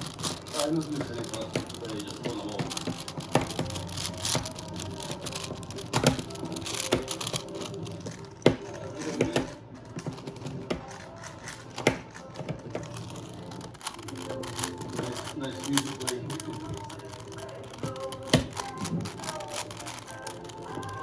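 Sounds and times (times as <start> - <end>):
puzzle cube clicking: 0.0 - 21.0.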